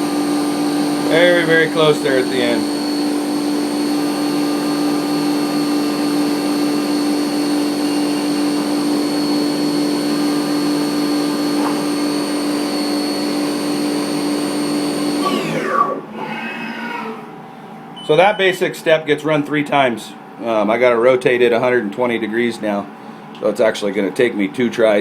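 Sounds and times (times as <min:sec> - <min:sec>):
milling machine spindle whine: 0:00.0 - 0:17.4
cooling air hiss: 0:00.3 - 0:04.9.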